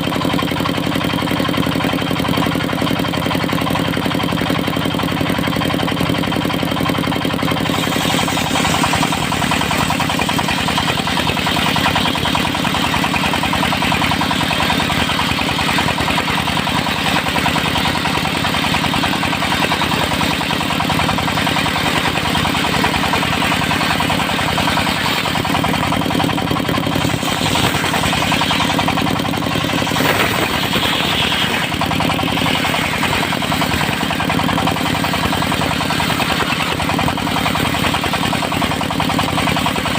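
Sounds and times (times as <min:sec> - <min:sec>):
sawmill engine running: 0:00.0 - 0:39.9
saw blade hissing through wood: 0:07.6 - 0:17.3, 0:22.6 - 0:36.7.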